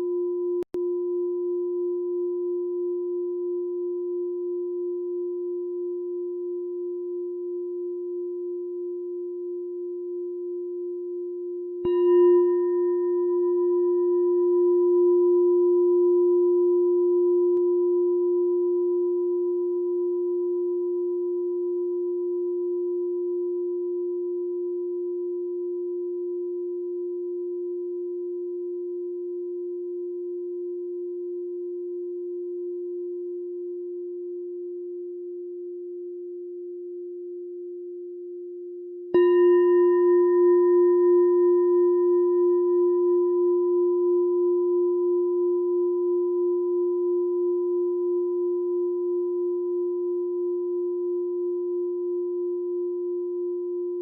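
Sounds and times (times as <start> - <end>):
meditation bell ringing: 11.8 - 28.5, 39.1 - 54.0.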